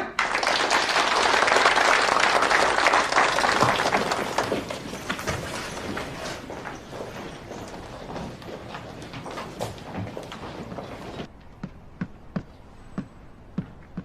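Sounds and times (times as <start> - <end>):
crowd applauding: 0.0 - 11.2.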